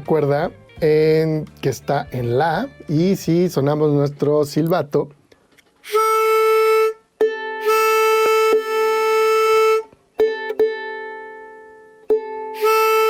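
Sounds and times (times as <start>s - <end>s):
pitch pipe note: 5.8s - 9.9s, 12.6s - 13.0s
ukulele string plucks: 9.9s - 12.8s.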